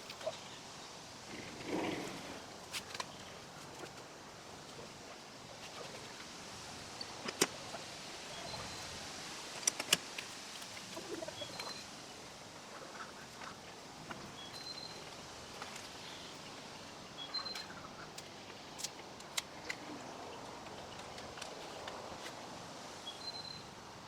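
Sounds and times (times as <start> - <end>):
faint high chirps: 11.0 - 11.9, 17.2 - 18.0.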